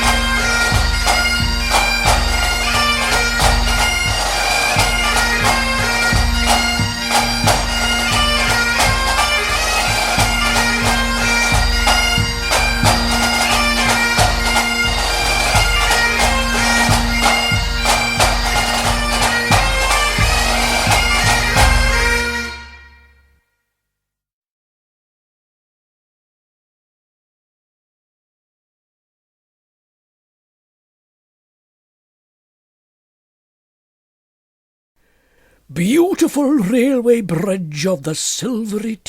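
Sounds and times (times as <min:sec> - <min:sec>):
bagpipe music: 0:00.0 - 0:23.3.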